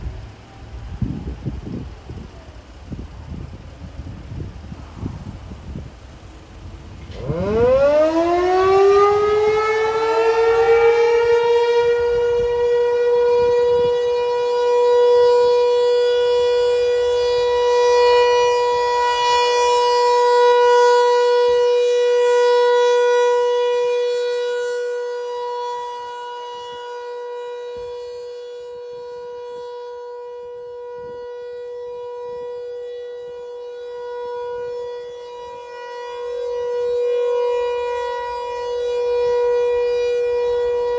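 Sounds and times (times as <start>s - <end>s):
warning siren steady tone: 0.0s - 40.9s.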